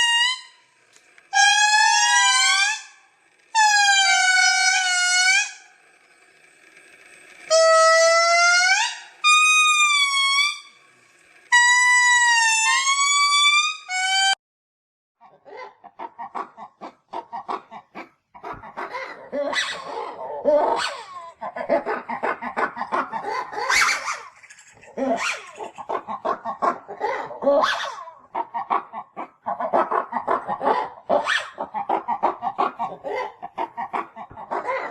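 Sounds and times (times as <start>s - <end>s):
lemur chattering and grunting: 15.2s - 34.9s.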